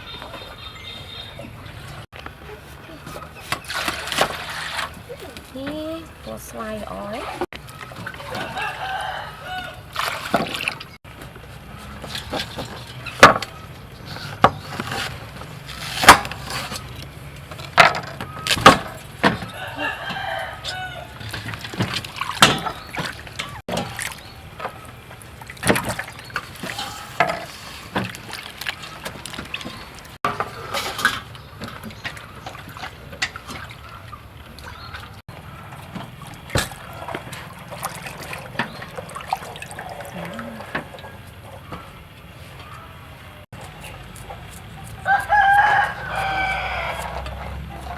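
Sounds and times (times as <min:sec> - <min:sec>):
chickens calling: 0:00.0 - 0:11.0, 0:18.2 - 0:25.2, 0:28.5 - 0:47.9
rooster crowing: 0:08.2 - 0:10.0, 0:19.5 - 0:21.2, 0:45.0 - 0:47.9
sharp knocks and clatters: 0:17.5 - 0:19.6.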